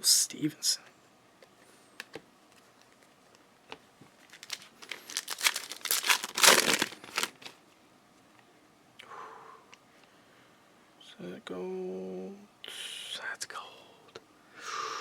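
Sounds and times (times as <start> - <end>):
foil wrapper crinkling and tearing: 4.2 - 7.6.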